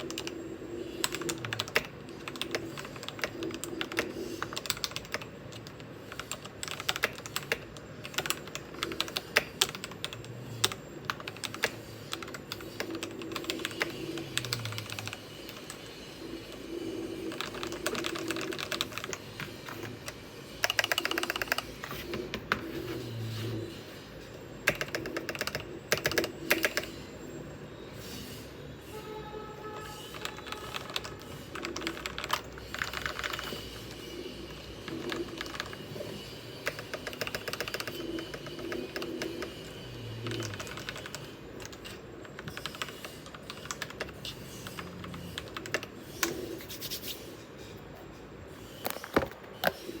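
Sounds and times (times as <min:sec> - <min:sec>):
mechanical keyboard typing: 0:00.0 - 0:15.9, 0:17.2 - 0:22.9, 0:24.6 - 0:26.9, 0:30.1 - 0:33.9, 0:34.8 - 0:46.5.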